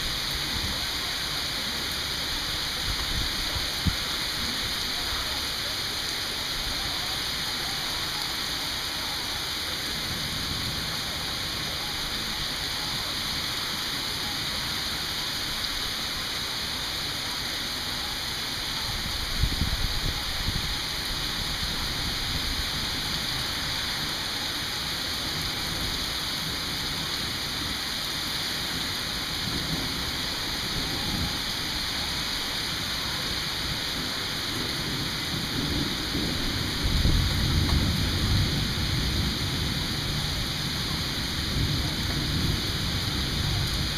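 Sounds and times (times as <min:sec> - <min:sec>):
rain hissing: 0:00.0 - 0:43.9
thunder rumbling: 0:33.7 - 0:43.9.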